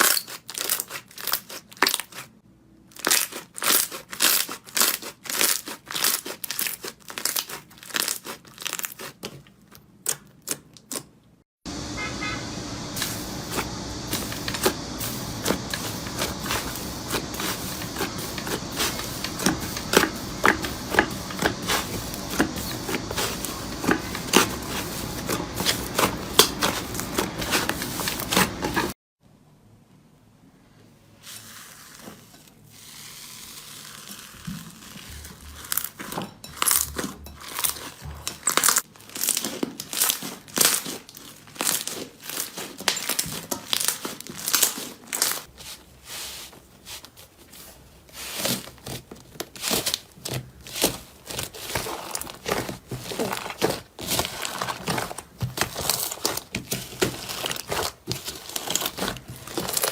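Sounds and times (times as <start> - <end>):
slime crackling and popping: 0.0 - 2.2, 2.9 - 9.2, 32.9 - 45.5, 48.4 - 59.9.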